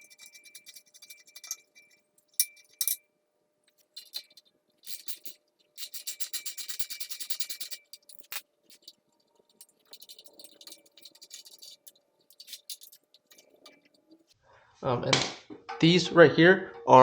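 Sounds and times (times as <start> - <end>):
metal hand tools clinking: 0.0 - 3.0, 3.8 - 14.3
ratchet wrench clicking: 4.0 - 8.9.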